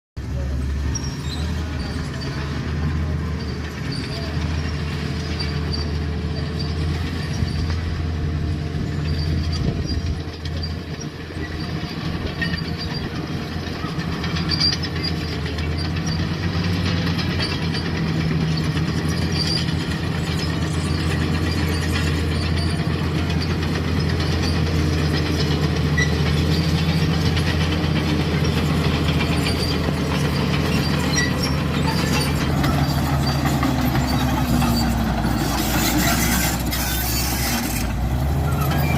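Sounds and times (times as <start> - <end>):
bulldozer diesel engine running: 0.2 - 38.9
steel tracks clanking and squeaking: 0.2 - 38.9.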